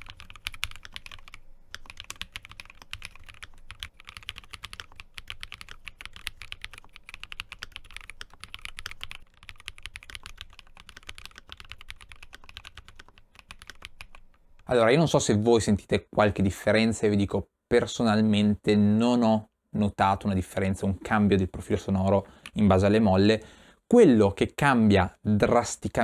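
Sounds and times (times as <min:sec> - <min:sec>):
fast typing on mechanical keyboard: 0:00.0 - 0:14.7.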